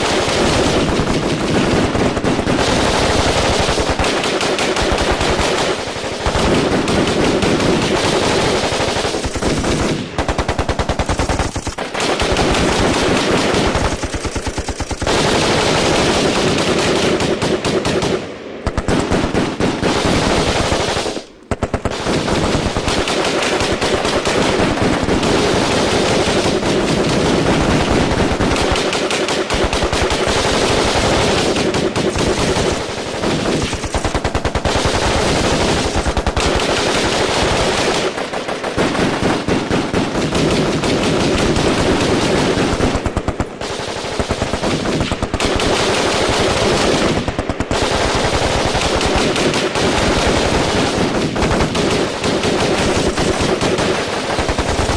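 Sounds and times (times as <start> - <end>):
automatic gunfire bursts: 0.0 - 54.9.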